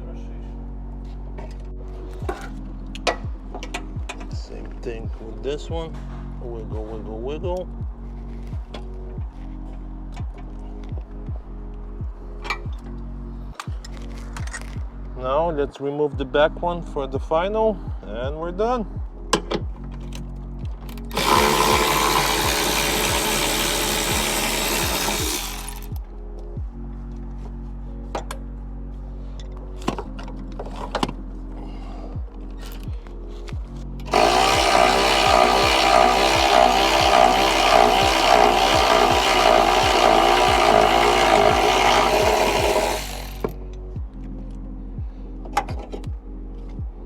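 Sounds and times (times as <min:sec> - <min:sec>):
background music with steady beat: 0:00.0 - 0:47.0
power tool running: 0:21.1 - 0:26.0, 0:34.1 - 0:43.5.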